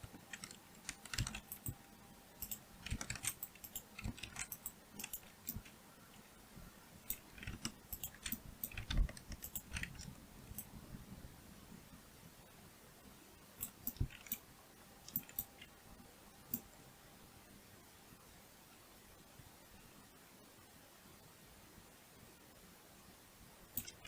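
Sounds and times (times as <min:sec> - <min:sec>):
keyboard keystrokes: 0:00.0 - 0:01.8, 0:02.4 - 0:05.8, 0:07.1 - 0:10.1, 0:13.6 - 0:14.4, 0:15.1 - 0:15.7, 0:23.8 - 0:24.0
mouse clicks: 0:02.4 - 0:05.8, 0:07.1 - 0:10.7, 0:13.6 - 0:14.4, 0:15.0 - 0:15.7, 0:23.8 - 0:24.0.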